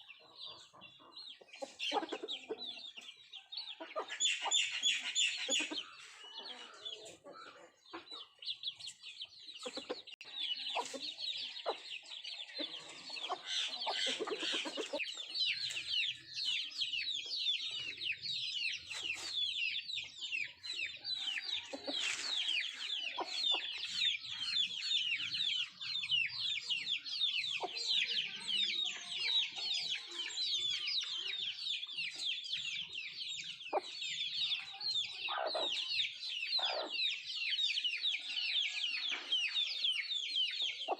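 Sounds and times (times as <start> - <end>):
chickens clucking: 0.0 - 40.9
chorus of high chirps: 0.0 - 40.9.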